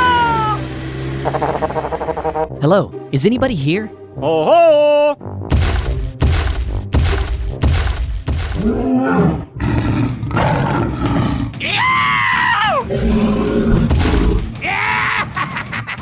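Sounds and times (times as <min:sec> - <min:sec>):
monster growls and roars: 0:08.5 - 0:14.6.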